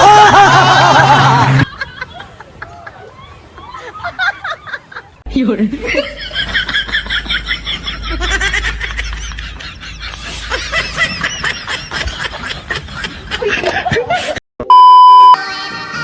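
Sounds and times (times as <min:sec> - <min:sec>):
people laughing and snickering: 0:00.0 - 0:05.2, 0:05.8 - 0:14.4
loud steady beep tone: 0:14.6 - 0:15.4.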